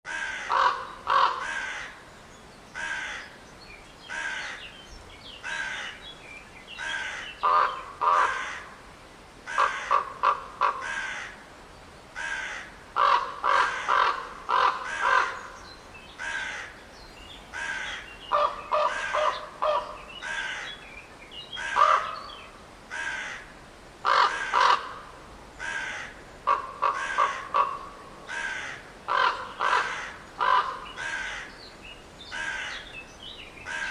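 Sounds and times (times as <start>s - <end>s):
crow cawing: 0.1s - 2.0s, 2.8s - 3.3s, 4.1s - 4.7s, 5.4s - 6.0s, 6.8s - 8.8s, 9.5s - 11.4s, 12.2s - 15.5s, 16.2s - 16.8s, 17.5s - 20.8s, 21.6s - 22.3s, 22.9s - 31.6s, 32.3s - 32.9s, 33.7s - 33.9s.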